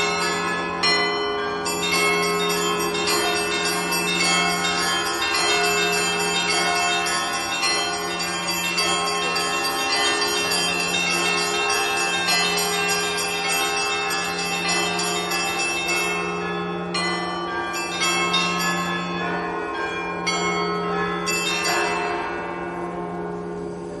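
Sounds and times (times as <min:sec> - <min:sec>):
small high bells striking: 0:00.0 - 0:22.3
large bell humming: 0:00.0 - 0:24.0.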